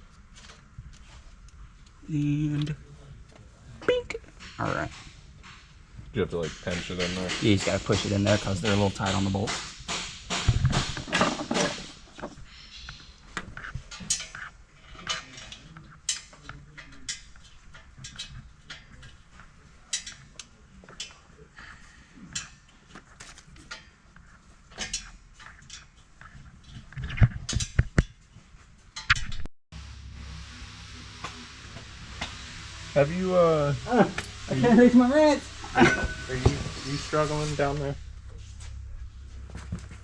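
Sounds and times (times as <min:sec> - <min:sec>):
metal tools clinking on steel: 0:34.1 - 0:37.0.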